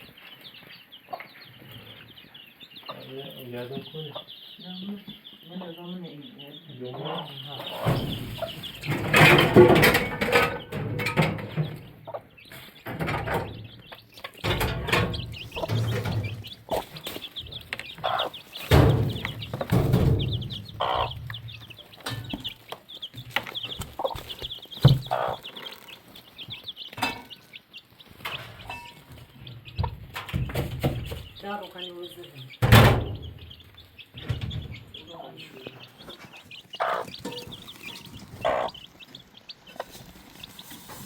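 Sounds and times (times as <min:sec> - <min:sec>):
chickens clucking: 0:00.0 - 0:41.0
knocks and bumps: 0:07.7 - 0:11.9, 0:12.8 - 0:25.5, 0:28.1 - 0:31.5, 0:32.6 - 0:33.5, 0:34.1 - 0:35.0.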